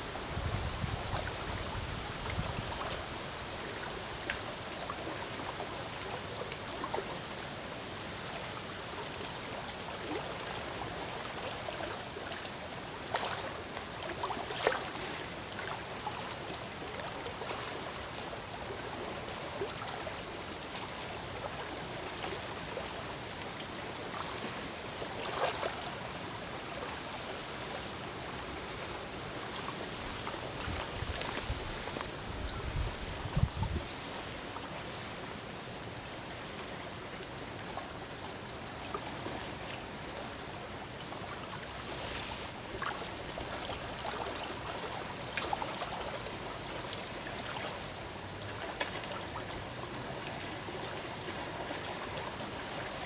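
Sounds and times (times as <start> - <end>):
water splashes: 0.0 - 53.0
waves lapping on shore: 0.0 - 53.0
wind buffeting microphone: 0.2 - 2.8, 30.6 - 34.0.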